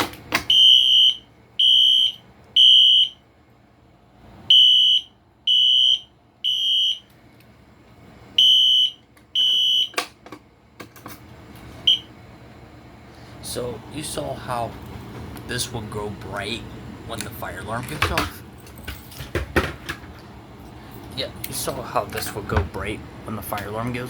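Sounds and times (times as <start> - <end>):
fire alarm horn beeping: 0.4 - 3.2, 4.5 - 7.1, 8.4 - 10.1, 11.8 - 12.2.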